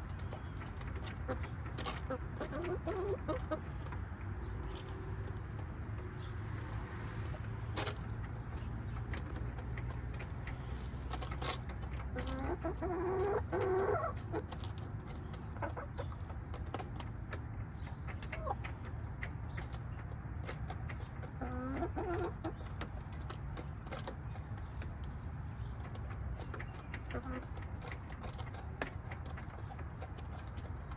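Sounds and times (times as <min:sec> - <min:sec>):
chicken calling: 0:00.2 - 0:05.4, 0:11.4 - 0:14.5.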